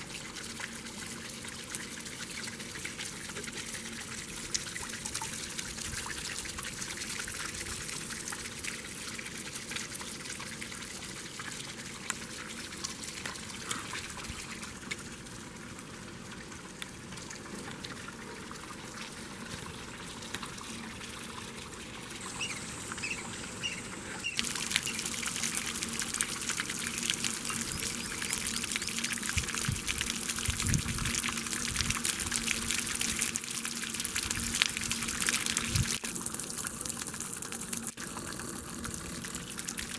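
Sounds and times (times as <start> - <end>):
water splashing and trickling: 0.0 - 39.9.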